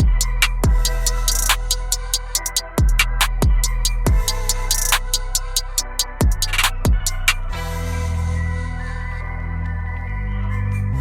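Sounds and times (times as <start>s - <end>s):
deep bass-drum hits: 0.0s - 2.0s, 2.8s - 5.3s, 6.2s - 7.4s
drum-machine beat music: 0.0s - 7.9s.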